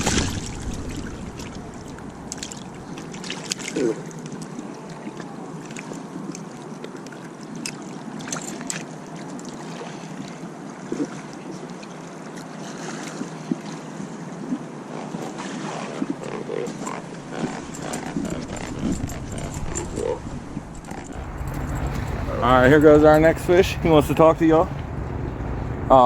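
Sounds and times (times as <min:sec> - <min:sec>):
small splashes and knocks: 0:00.0 - 0:14.6
water rushing at the bank: 0:00.0 - 0:26.0.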